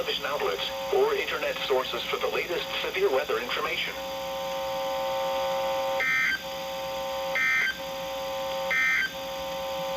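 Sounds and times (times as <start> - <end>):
steady buzzing hum: 0.0 - 9.9
harsh digital data tone bursts: 5.9 - 7.9, 8.6 - 9.3.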